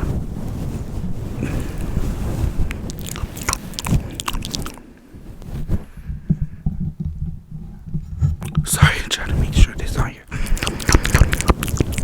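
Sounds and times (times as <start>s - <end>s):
mouth clicks and smacks: 2.6s - 12.0s.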